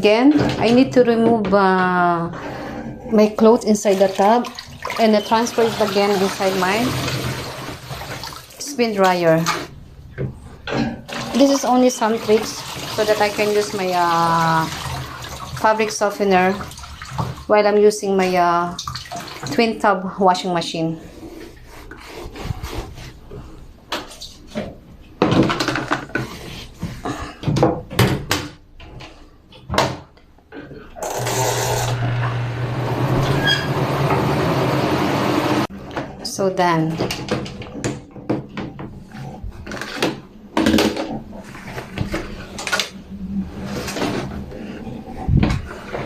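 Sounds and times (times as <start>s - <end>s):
washing machine knocks and clatter: 0.0s - 2.1s, 25.2s - 26.2s, 27.4s - 28.6s.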